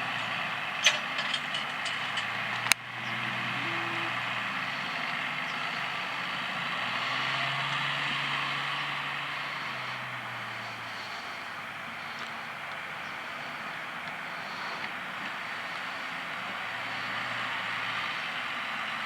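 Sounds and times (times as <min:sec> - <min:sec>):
tractor engine running: 0:00.0 - 0:19.0.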